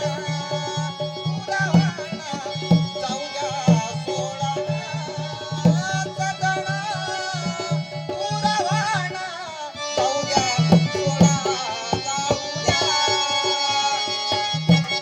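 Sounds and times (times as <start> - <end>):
hand drums beating: 0.0 - 9.3, 9.9 - 15.0.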